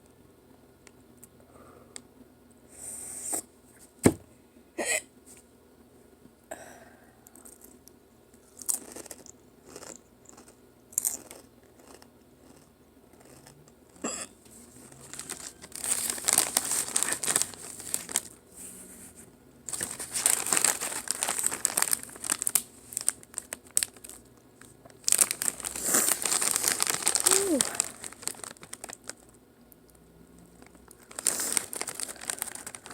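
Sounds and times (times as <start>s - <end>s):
foil chip bag crinkling: 14.7s - 18.4s, 19.7s - 29.3s, 30.6s - 32.9s.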